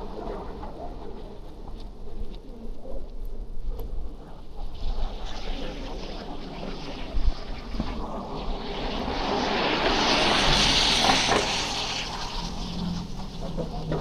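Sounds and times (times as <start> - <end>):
steady low rumble: 0.0 - 14.0
vehicle tyre hiss on snow: 4.6 - 14.0.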